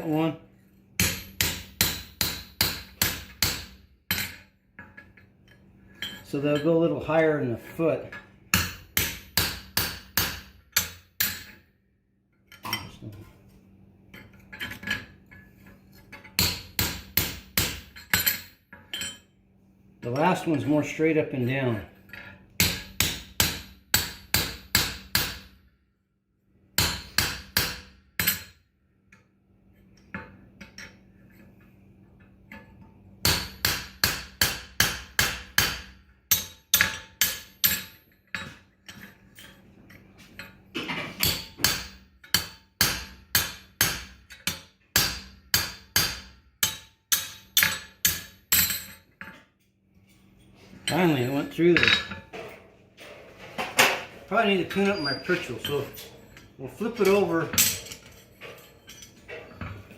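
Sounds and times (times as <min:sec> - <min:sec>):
hammer striking metal on anvil: 0:01.0 - 0:04.5, 0:08.1 - 0:11.6, 0:16.3 - 0:19.2, 0:22.2 - 0:25.6, 0:26.8 - 0:28.6, 0:33.2 - 0:38.6, 0:41.2 - 0:49.0, 0:50.9 - 0:52.2.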